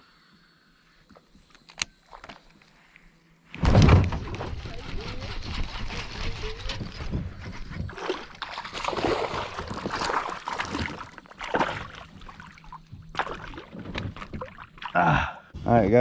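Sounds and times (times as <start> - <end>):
knocks and rustles: 3.5 - 8.6, 11.8 - 14.6
water splashing against kayak: 4.0 - 15.0.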